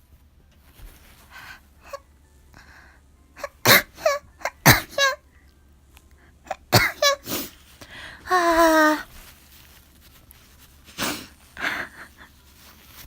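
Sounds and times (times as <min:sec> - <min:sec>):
breathy inhales: 0:07.2 - 0:08.3.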